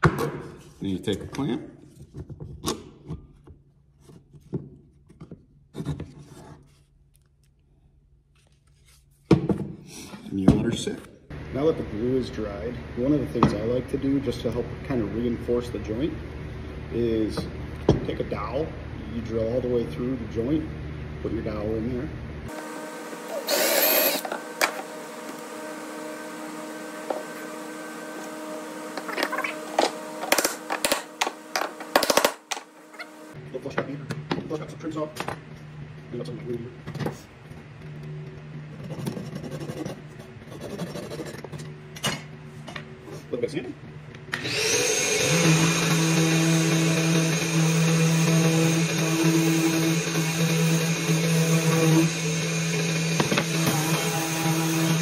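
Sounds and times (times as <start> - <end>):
power drill motor humming: 22.5 - 33.4, 44.3 - 55.0.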